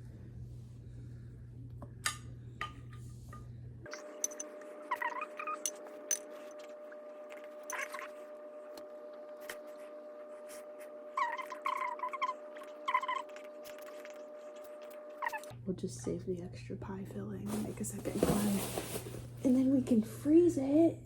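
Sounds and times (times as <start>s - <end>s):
steady hum: 0.0s - 21.0s
dishes and utensils clinking: 3.9s - 6.2s.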